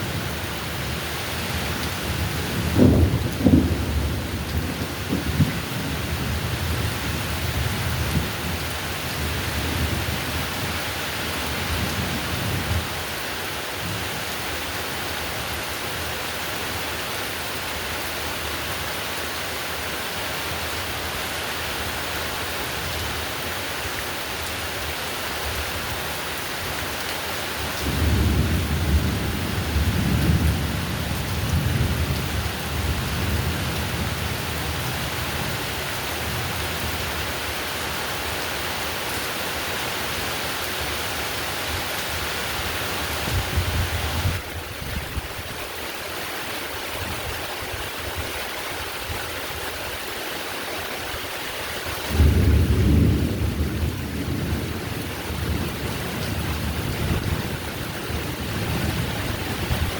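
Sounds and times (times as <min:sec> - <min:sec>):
heavy rain falling: 0:00.0 - 0:59.9
thunder rolling: 0:02.1 - 0:07.1, 0:52.1 - 0:59.9.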